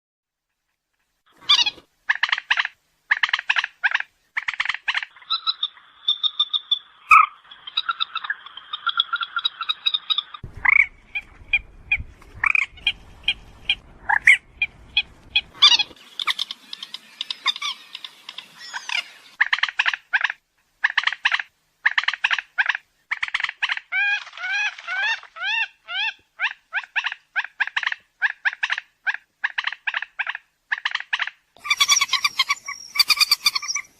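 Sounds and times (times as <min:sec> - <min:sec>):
moorhen calls: 0:01.4 - 0:33.9.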